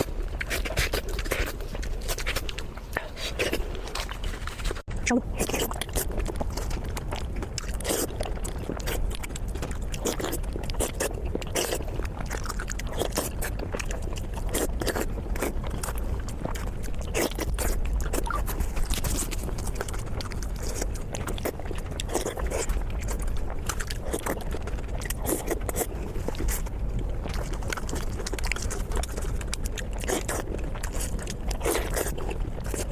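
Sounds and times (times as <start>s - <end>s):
scrapes: 0.0s - 4.9s
chewing and biting: 0.0s - 32.9s.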